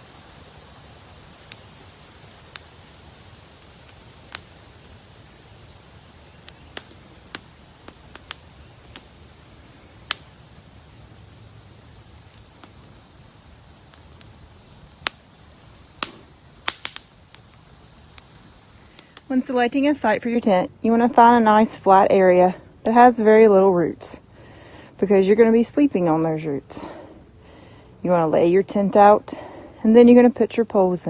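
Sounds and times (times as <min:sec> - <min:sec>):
steady hiss: 0:00.0 - 0:31.0
sharp clicks: 0:16.0 - 0:19.4.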